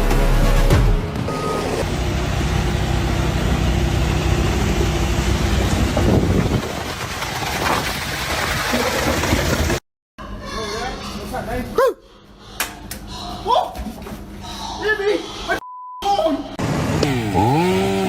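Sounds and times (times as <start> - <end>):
engine running: 0.1 - 8.1, 16.6 - 18.0.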